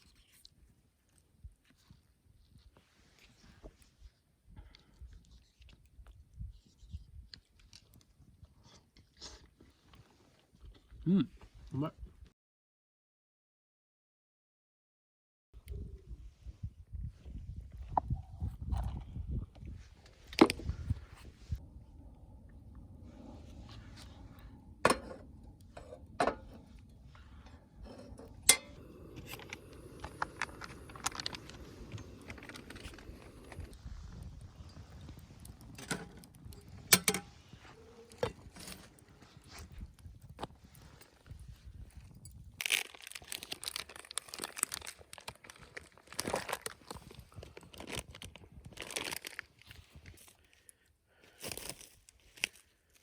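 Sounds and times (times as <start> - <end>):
utensils and dishes clinking: 36.9 - 37.3
material crinkling and rustling: 42.6 - 50.7, 51.3 - 53.0.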